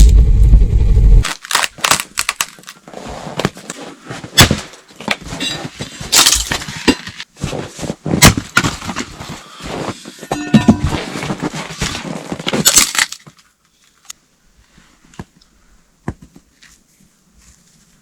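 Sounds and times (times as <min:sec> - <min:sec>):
sharp cracks and snaps: 0:01.2 - 0:03.6, 0:12.4 - 0:14.2.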